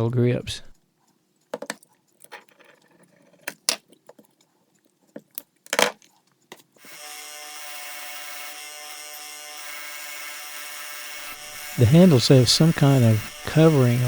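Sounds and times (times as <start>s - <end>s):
power tool running: 6.8s - 14.0s.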